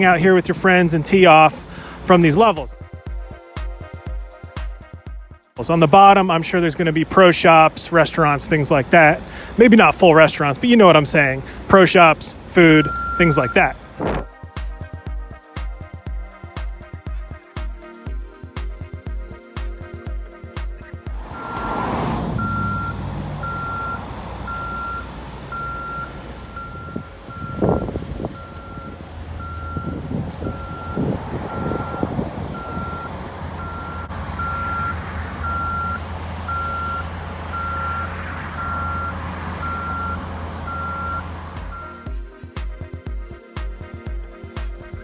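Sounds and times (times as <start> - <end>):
truck engine running: 0.0 - 2.7, 5.6 - 14.3, 21.2 - 42.1
reversing alarm beeping: 12.6 - 14.0, 21.2 - 42.1
vehicle rushing by: 21.2 - 42.1.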